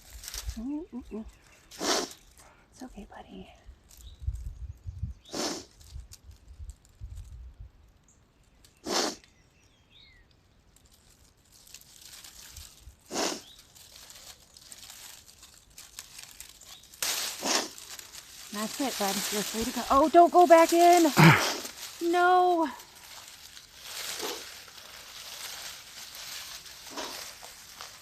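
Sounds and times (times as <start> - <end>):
plastic netting rustling: 0.0 - 2.4, 10.8 - 28.0
person sniffling: 8.9 - 9.2, 21.1 - 21.8.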